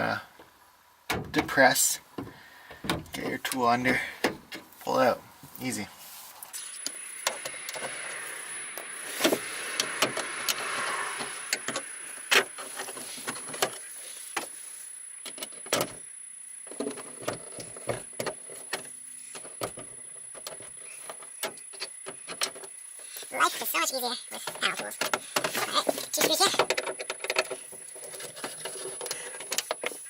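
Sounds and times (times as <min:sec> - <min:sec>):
plastic scraping and rubbing: 0:24.6 - 0:30.0.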